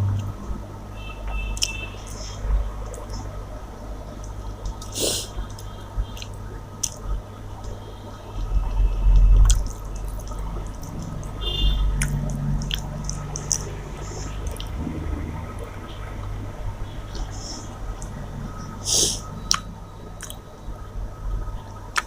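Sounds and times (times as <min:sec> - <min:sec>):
steady low hum: 0:00.0 - 0:22.0
wet squishy chewing: 0:09.1 - 0:16.4, 0:19.4 - 0:20.5.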